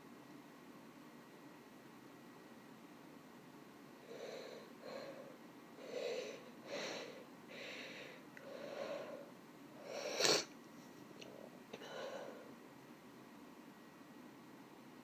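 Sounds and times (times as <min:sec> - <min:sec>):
woman's breathy inhales: 0:04.1 - 0:10.4.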